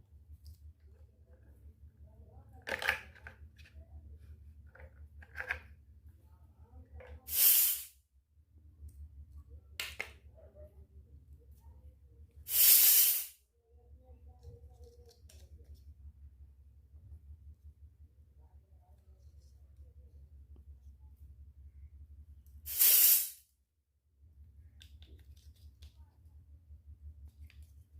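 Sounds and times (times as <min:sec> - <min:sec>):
light clicks and taps: 0:24.7 - 0:26.1.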